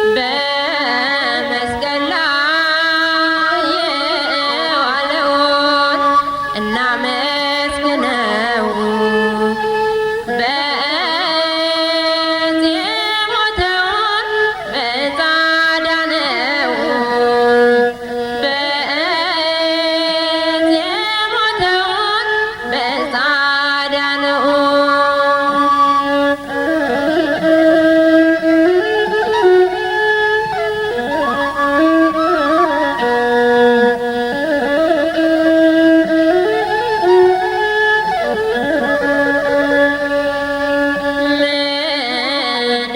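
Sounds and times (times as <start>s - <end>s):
ornamented melody: 25.3s - 41.3s.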